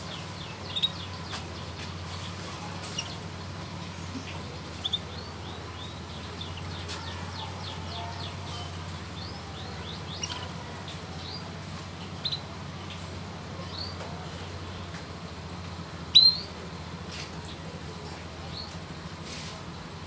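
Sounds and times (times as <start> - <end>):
canary chirping: 0.0 - 14.0, 16.1 - 16.6.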